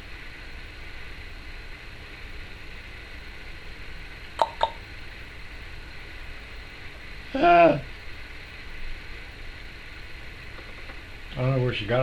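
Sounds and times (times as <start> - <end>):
parrot making pops: 4.4 - 4.8.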